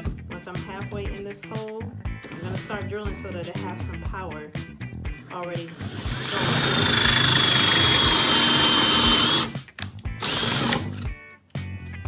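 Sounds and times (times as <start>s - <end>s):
drill bit cutting wood: 2.2s - 2.8s, 5.2s - 9.6s, 10.2s - 11.0s
power drill whining: 2.2s - 2.8s, 5.2s - 9.6s, 10.2s - 11.0s.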